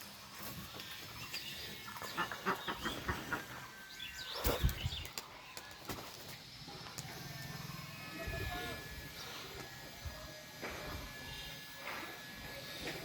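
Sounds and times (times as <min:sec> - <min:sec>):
pigeons cooing: 0:00.9 - 0:06.0.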